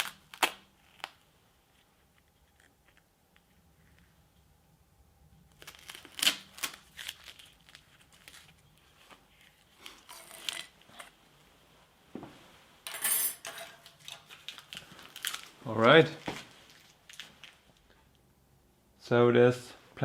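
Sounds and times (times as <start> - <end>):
metal tools clinking and knocking: 12.9 - 14.2.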